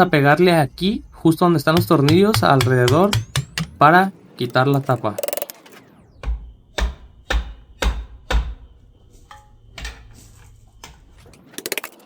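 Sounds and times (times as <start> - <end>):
hammer striking metal housing: 0.0 - 8.6.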